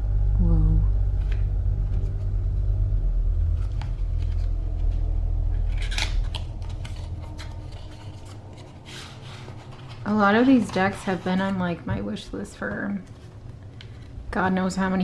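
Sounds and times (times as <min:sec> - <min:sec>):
low steady rumble: 0:00.0 - 0:15.0
cardboard scrape: 0:03.5 - 0:11.8
cardboard box and cards rustling: 0:03.6 - 0:14.1.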